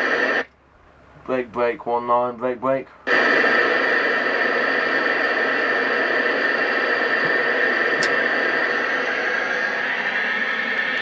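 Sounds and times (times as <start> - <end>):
radio static hiss: 0.0 - 0.5, 1.2 - 11.0
radio click: 3.1 - 11.0.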